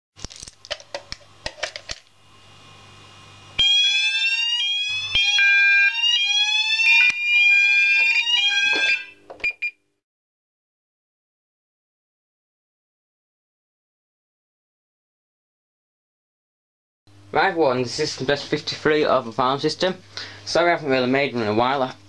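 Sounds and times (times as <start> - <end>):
fire alarm sounders: 3.6 - 9.8.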